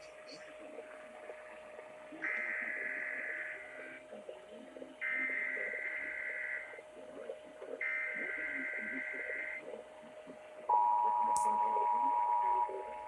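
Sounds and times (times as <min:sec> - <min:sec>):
buzzy two-tone digital data bursts: 0:02.1 - 0:04.0, 0:05.0 - 0:06.8, 0:07.8 - 0:09.7.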